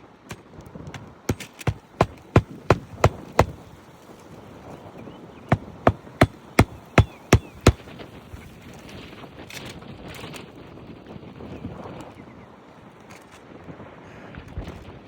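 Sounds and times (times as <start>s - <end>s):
hammer driving nails into shingle: 1.3s - 3.6s, 5.5s - 7.9s.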